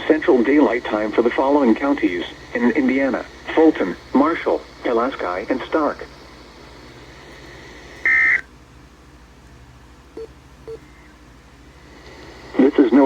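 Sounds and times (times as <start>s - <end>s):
low radio hiss: 0.0s - 13.0s
faint short blips: 10.2s - 10.9s.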